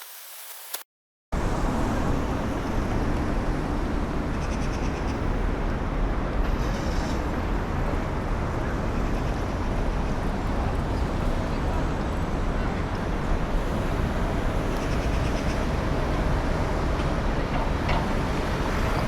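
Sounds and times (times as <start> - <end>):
traffic noise: 1.4 - 19.0.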